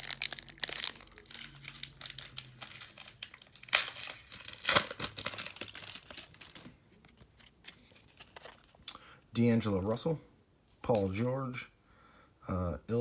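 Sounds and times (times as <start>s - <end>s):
foil wrapper crinkling and tearing: 0.0s - 8.8s.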